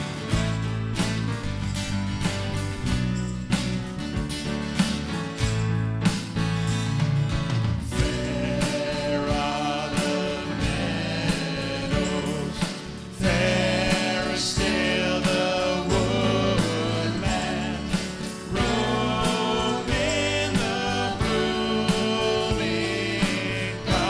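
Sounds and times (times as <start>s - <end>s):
guitar: 0.0s - 24.0s
group singing a christian song: 7.8s - 24.0s
steady beat: 13.2s - 24.0s.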